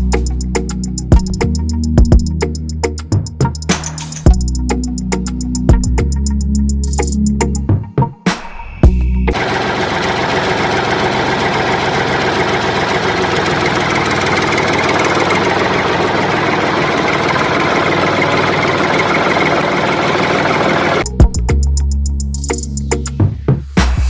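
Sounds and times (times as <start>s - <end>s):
small engine rattling: 9.4s - 21.0s.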